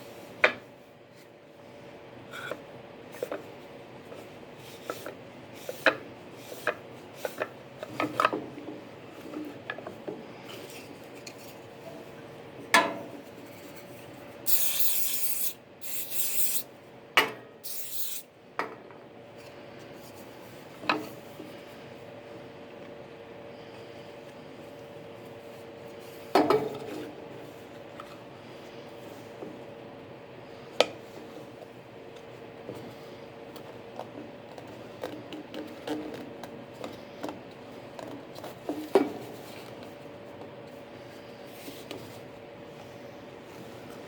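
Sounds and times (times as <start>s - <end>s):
faint steady hum: 0.0s - 44.0s
short hissing bursts: 14.5s - 16.6s, 17.6s - 18.2s.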